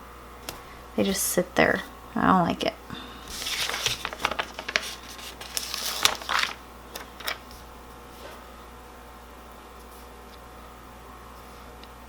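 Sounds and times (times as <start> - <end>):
paper crinkling and rustling: 3.3 - 7.6.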